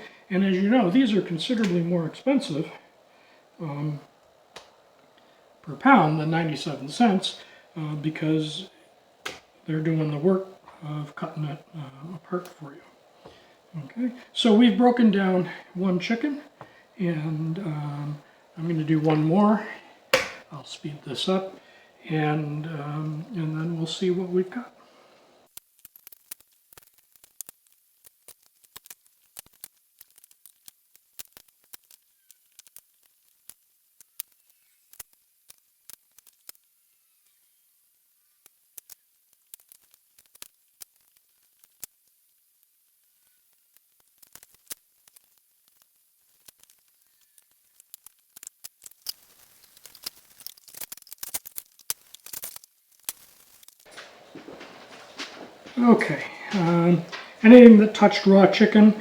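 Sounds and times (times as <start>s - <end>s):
knife cutting raw chicken: 20.2s - 20.4s.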